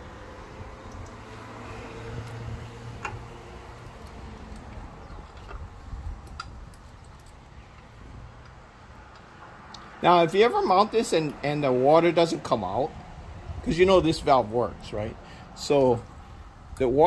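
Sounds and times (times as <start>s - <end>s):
metal parts and tools clicking: 5.3s - 7.4s.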